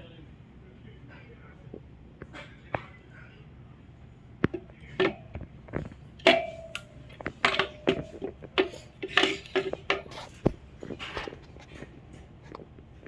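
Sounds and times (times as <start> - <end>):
metal parts clinking and knocking: 6.2 - 11.2.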